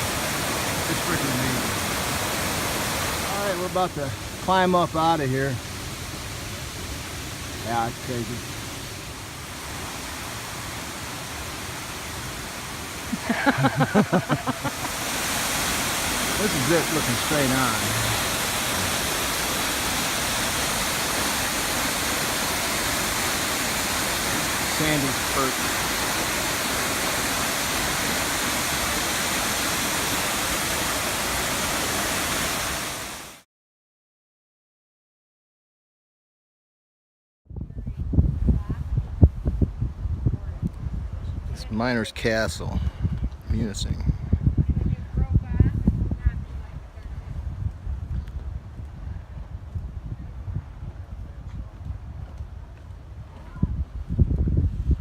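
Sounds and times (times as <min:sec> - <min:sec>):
waterfall rushing: 0:00.0 - 0:33.4.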